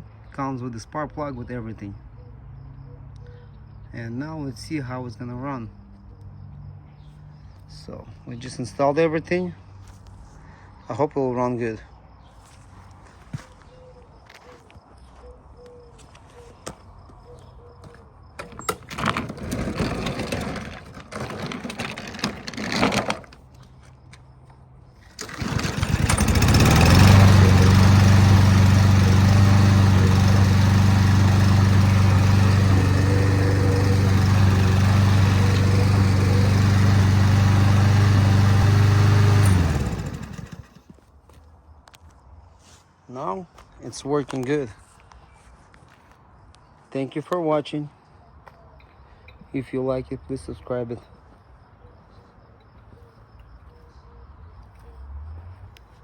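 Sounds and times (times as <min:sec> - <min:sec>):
mower engine running: 0:18.4 - 0:23.4, 0:25.1 - 0:40.9
mower engine cranking: 0:18.4 - 0:23.5, 0:25.0 - 0:40.9.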